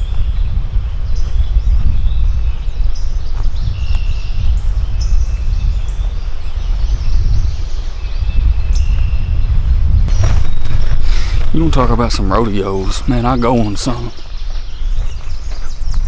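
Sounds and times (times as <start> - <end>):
small birds chirping: 0.0 - 16.0
low rumbling noise: 9.9 - 14.4.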